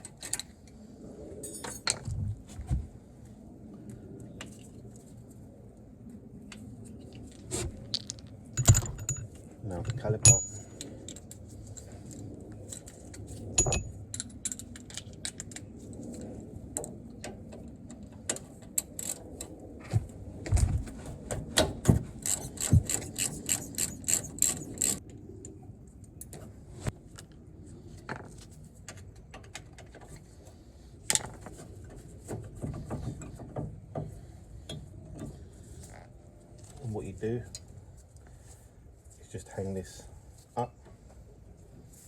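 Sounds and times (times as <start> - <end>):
metal clicks and knocks: 7.9 - 10.6.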